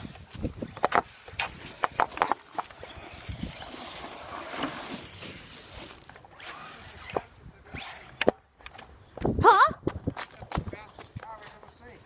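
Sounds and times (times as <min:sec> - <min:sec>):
rc car driving over rough ground: 0:00.0 - 0:09.0.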